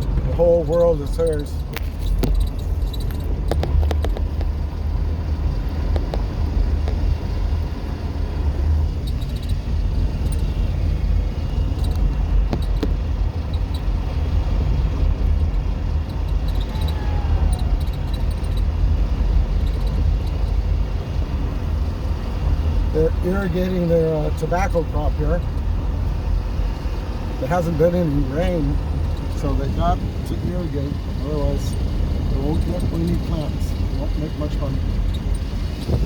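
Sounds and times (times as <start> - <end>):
car road rumble: 0.0 - 36.0.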